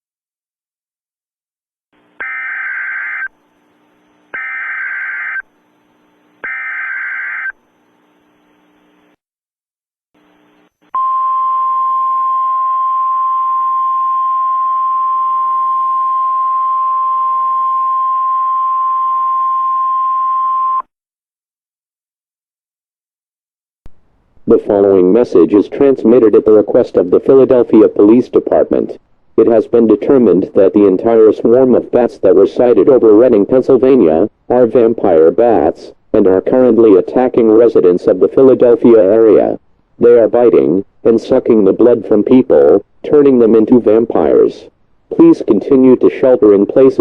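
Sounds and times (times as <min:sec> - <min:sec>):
screechy digital data tones: 0:02.2 - 0:03.3, 0:04.4 - 0:05.4, 0:06.4 - 0:07.6
steady single-pitch attention tone: 0:10.9 - 0:20.9.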